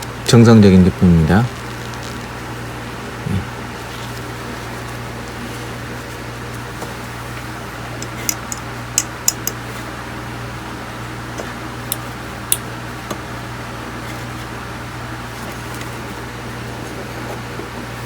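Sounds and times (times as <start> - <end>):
steady low hum: 0.0 - 18.0
small tool clicks and taps: 8.0 - 9.6.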